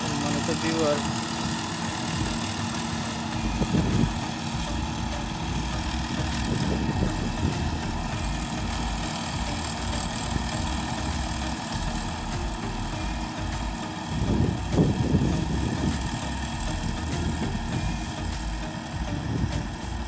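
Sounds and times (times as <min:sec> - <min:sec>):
combine harvester engine drone: 0:00.0 - 0:20.0.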